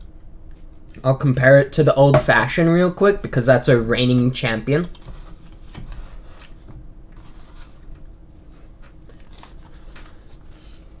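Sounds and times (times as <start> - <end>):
carton and cup handling taps: 2.1 - 2.5.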